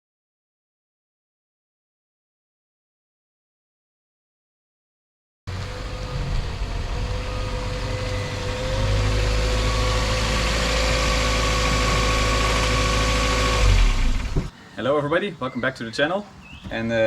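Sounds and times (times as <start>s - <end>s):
car engine running: 5.5s - 14.5s.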